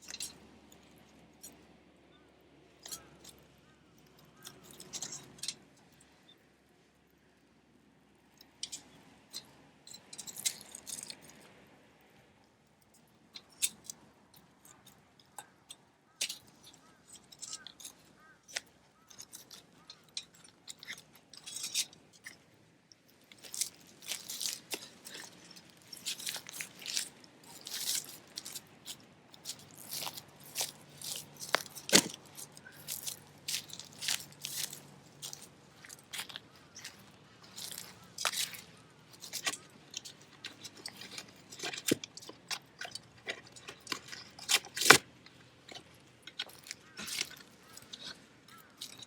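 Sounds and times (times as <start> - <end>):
firewood crackling and snapping: 29.4 - 38.7.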